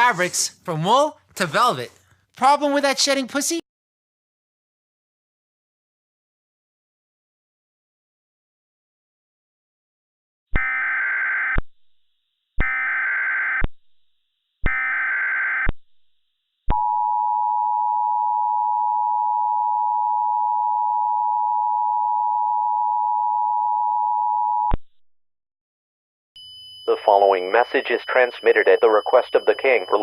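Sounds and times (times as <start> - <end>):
screeching digital data tones: 26.4 - 30.0
two-tone attention signal: 26.4 - 30.0.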